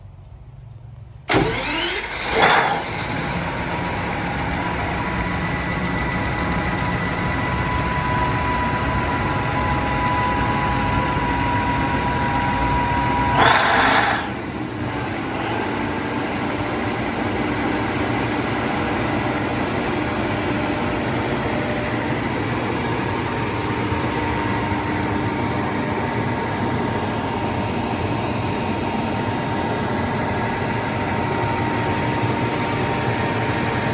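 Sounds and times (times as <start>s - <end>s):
generator engine running: 1.2s - 33.9s
rush of noise: 13.2s - 16.0s.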